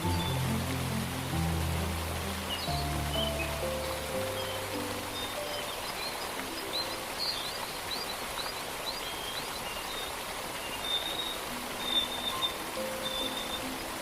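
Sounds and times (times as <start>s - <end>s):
soft sparse music notes: 0.0s - 7.6s, 11.2s - 14.0s
distant falling water: 0.0s - 14.0s
birdsong chirps and whistles: 2.5s - 14.0s.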